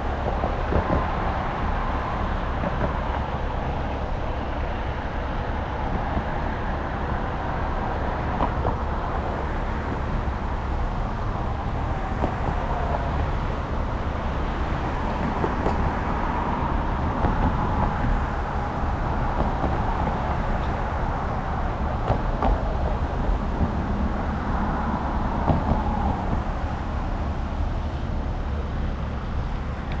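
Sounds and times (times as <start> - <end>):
low road rumble: 0.0 - 30.0.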